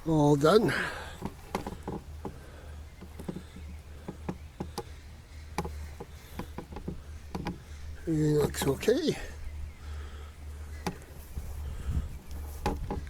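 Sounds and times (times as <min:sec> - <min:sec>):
steady low hum: 0:00.0 - 0:13.0
tools clicking and knocking: 0:01.2 - 0:02.4, 0:03.0 - 0:07.7, 0:12.6 - 0:13.0.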